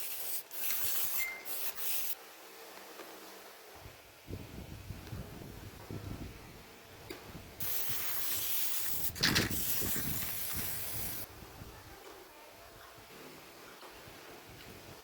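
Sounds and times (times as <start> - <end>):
spraying hiss: 0.0 - 2.2, 7.6 - 11.3.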